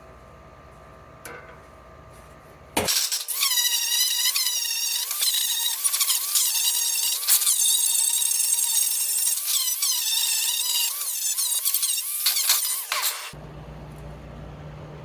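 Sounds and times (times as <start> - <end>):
small power tool whining: 2.9 - 13.4.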